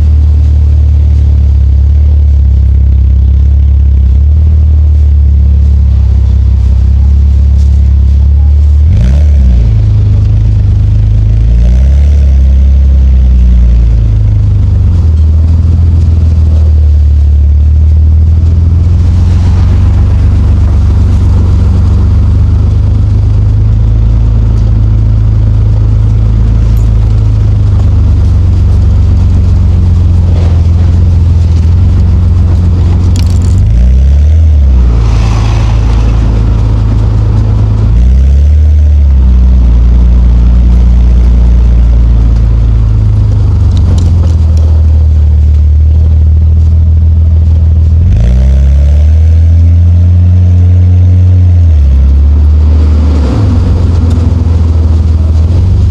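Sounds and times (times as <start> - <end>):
car engine droning at low revs: 0.0 - 55.9.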